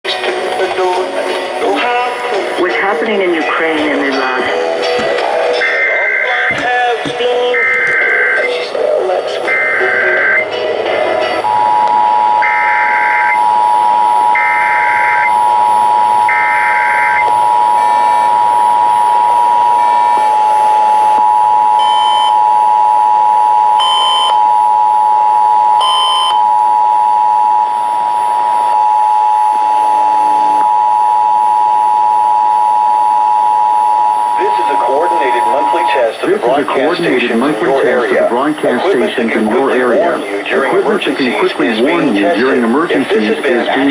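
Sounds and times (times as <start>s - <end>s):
harsh two-tone alert tone: 2.6s - 8.7s, 9.4s - 21.1s, 34.2s - 40.2s.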